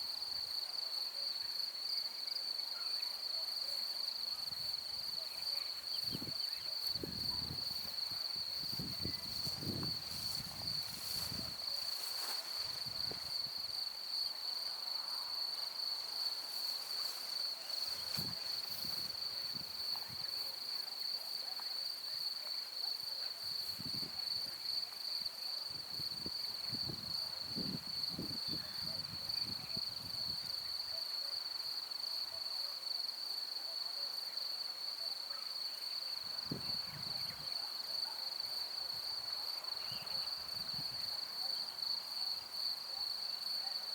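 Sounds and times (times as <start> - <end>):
crickets chirring: 0.0 - 43.9
wind rumble on microphone: 6.0 - 12.1, 23.7 - 24.6, 25.7 - 30.6, 36.4 - 37.5.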